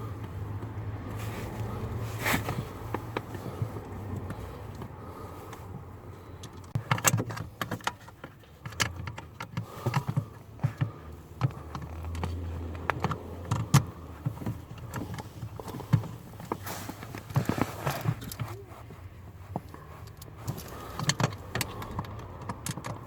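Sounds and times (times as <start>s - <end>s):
hand tools clicking and rattling: 6.4s - 23.0s.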